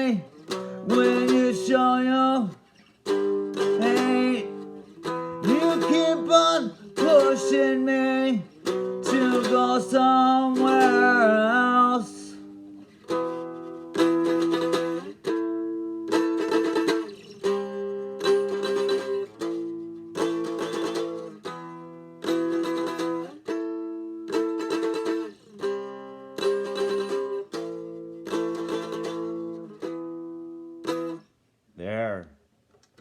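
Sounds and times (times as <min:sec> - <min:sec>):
acoustic guitar strummed chords: 0:00.0 - 0:31.2.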